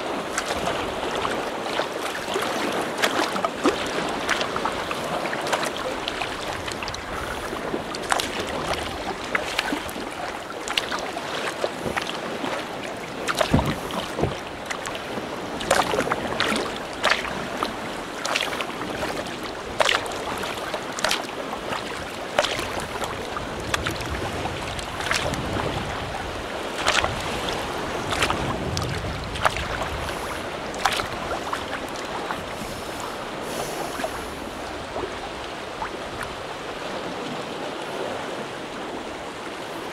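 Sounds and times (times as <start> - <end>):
paddle splashing water: 0.0 - 39.9
sea water washing: 0.0 - 39.9.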